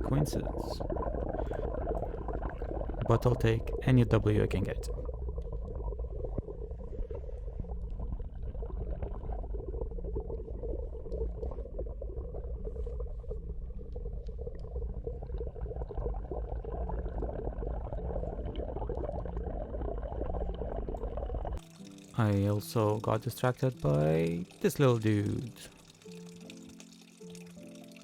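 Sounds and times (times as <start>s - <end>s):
dense crackling: 0.0s - 22.1s
pond water bubbling: 0.0s - 28.0s.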